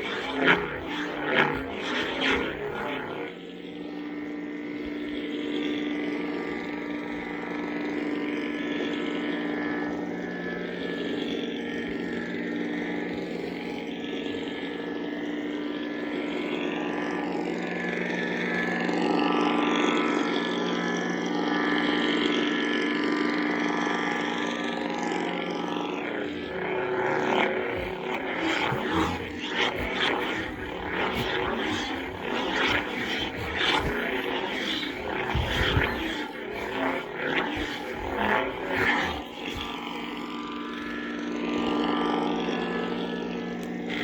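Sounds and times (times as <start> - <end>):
lightsaber hum: 0.0 - 15.8, 24.9 - 44.0.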